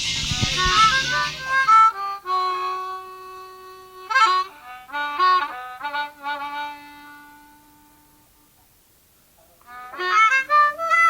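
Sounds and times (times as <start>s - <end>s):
harmonica playing: 0.0s - 8.0s.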